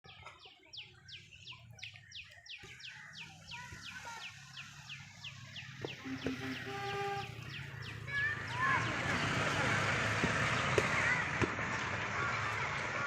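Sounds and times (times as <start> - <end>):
bird chirping: 0.1 - 9.4.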